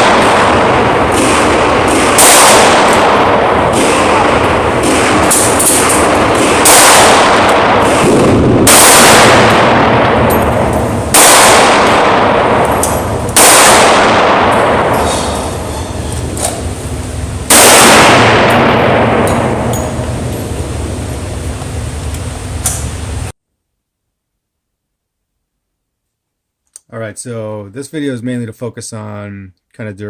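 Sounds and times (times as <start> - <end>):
pistol shots with echo: 0.0 - 15.7, 17.5 - 20.4.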